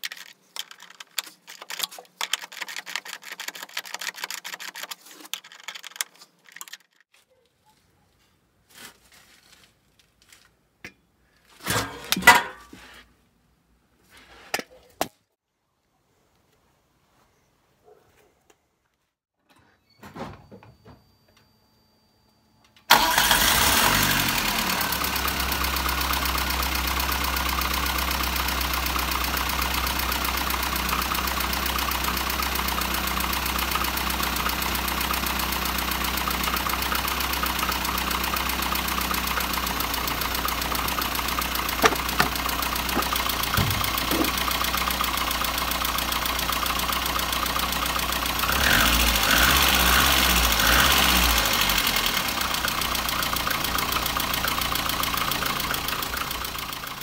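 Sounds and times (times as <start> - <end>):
car engine starting and idling: 22.9 - 57.0.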